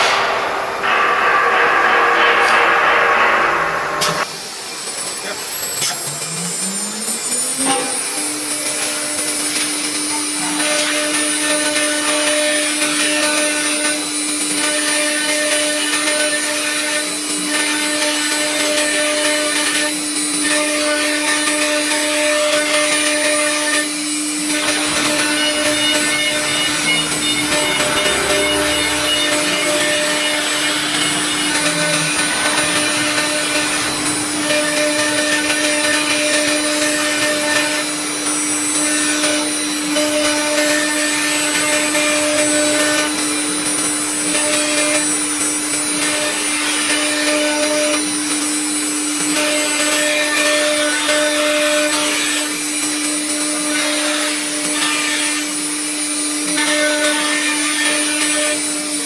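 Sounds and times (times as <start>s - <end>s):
loud rushing noise: 0.0s - 4.4s, 24.6s - 36.3s
router spindle whining: 5.4s - 8.8s, 24.3s - 38.8s.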